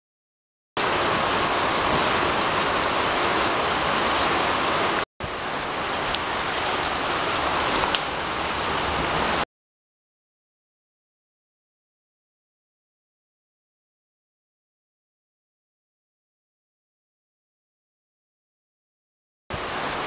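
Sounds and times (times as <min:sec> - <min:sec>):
heavy rain hissing: 0:00.8 - 0:09.4, 0:19.5 - 0:20.0.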